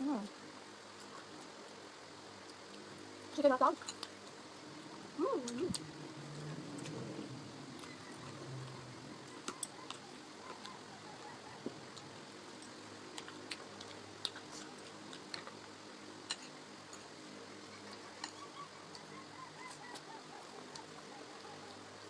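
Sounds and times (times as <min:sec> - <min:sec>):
steady low hum: 0:00.0 - 0:22.0
chewing: 0:07.8 - 0:15.7.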